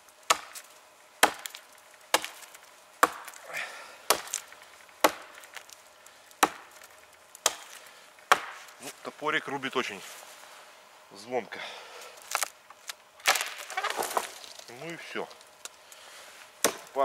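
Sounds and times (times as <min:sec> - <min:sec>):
hatchet chopping a tree trunk: 0:00.3 - 0:08.8, 0:13.2 - 0:14.4, 0:16.6 - 0:17.0.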